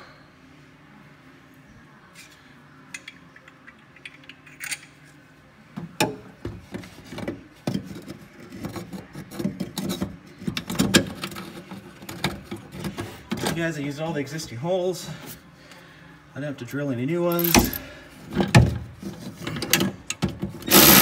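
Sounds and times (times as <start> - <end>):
metal tools clinking and rattling: 17.3 - 17.9.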